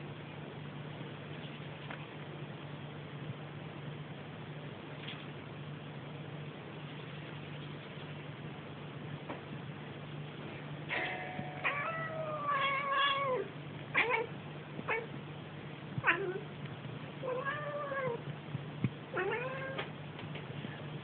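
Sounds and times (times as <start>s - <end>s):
cat meowing: 11.6s - 14.3s, 16.0s - 16.4s, 17.2s - 18.2s, 19.1s - 19.8s.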